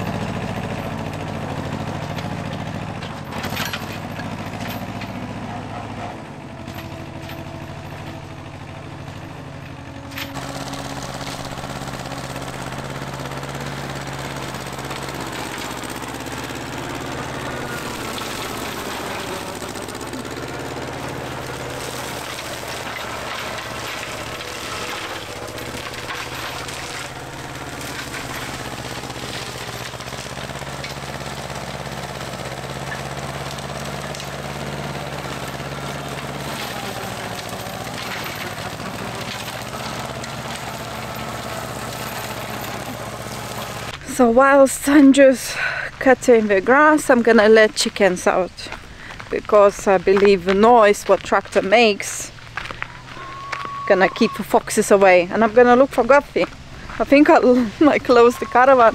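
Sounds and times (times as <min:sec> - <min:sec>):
flail mower clattering: 0:00.0 - 0:58.9
tractor engine running: 0:00.0 - 0:58.9.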